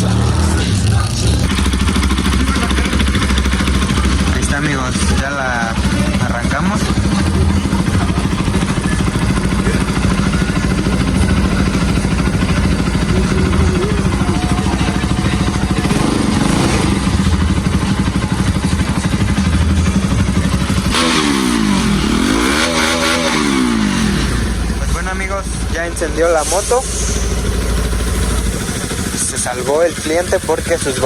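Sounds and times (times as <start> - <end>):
motorcycle engine running: 0.0 - 31.0.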